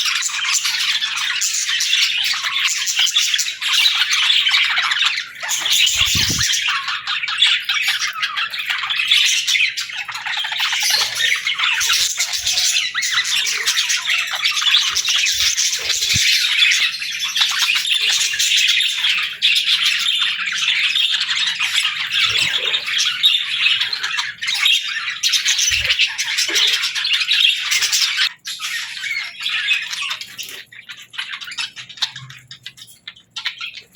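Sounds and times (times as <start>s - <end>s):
budgerigars chattering: 0.0s - 33.9s.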